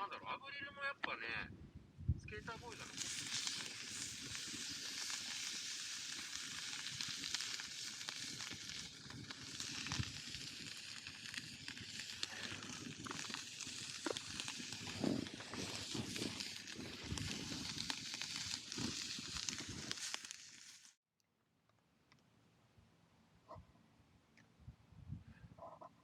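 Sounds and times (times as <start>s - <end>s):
campfire crackling and popping: 2.3s - 21.0s.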